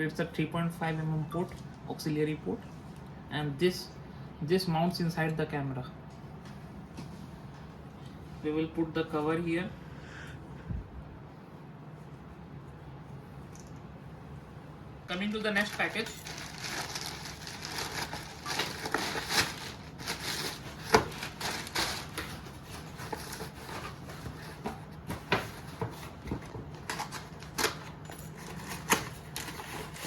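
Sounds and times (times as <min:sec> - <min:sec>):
packaging rustling and crinkling: 0:15.4 - 0:30.0.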